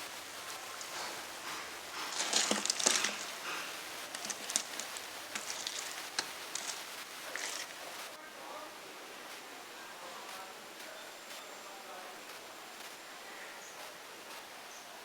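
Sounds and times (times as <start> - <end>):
food deep-frying in oil: 0.0 - 8.2
oil crackling and spitting: 0.0 - 8.2.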